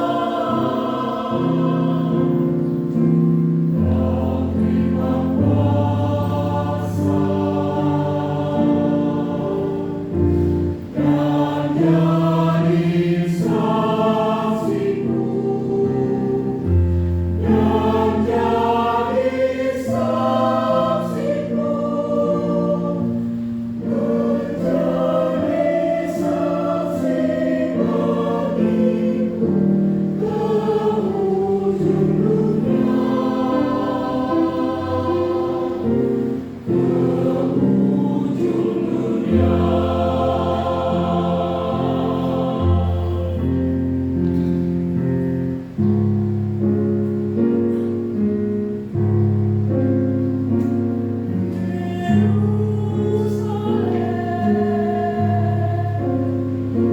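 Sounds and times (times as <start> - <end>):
church choir singing a hymn: 0.0 - 56.9.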